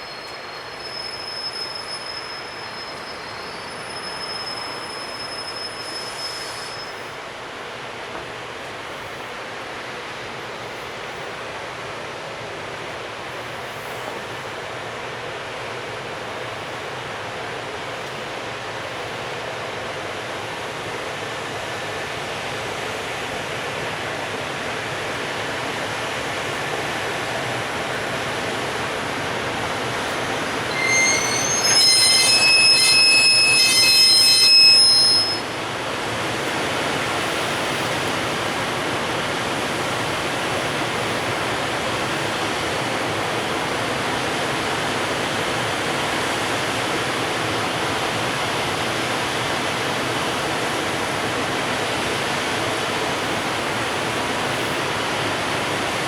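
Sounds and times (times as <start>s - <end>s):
high-pitched wheel squeal: 0.0s - 7.0s, 30.0s - 35.6s
freight train rumbling: 0.0s - 56.0s.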